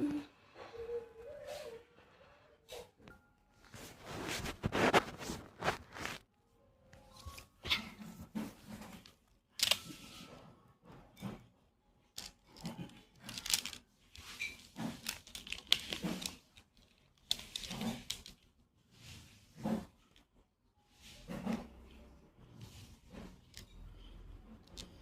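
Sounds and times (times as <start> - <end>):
plastic toy gun clicks and rattles: 9.0 - 10.0, 12.1 - 18.5.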